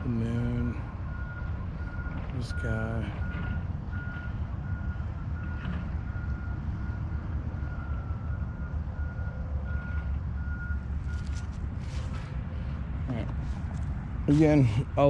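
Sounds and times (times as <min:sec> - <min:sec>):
reversing alarm beeping: 0:00.0 - 0:11.5
constant low rumble: 0:00.0 - 0:15.0.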